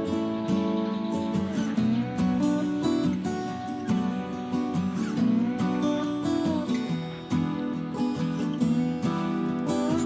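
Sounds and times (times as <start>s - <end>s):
strummed acoustic guitar chords: 0.0s - 10.0s.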